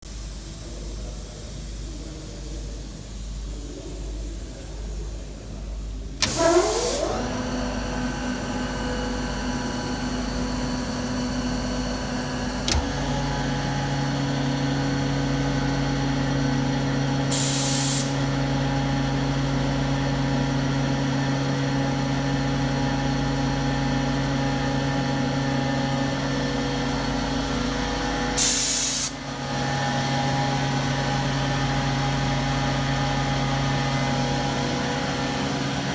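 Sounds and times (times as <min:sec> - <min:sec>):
compressor motor whine and hum: 0:01.7 - 0:35.9
air hiss blasts: 0:06.2 - 0:07.2, 0:17.3 - 0:18.3, 0:28.4 - 0:29.2
compressor click: 0:06.2 - 0:08.7, 0:09.5 - 0:13.3, 0:28.4 - 0:29.2.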